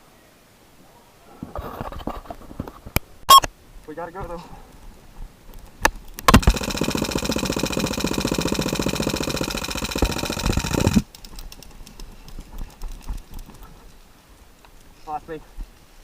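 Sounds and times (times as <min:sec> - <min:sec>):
airsoft gun full-auto firing: 0:06.2 - 0:11.1.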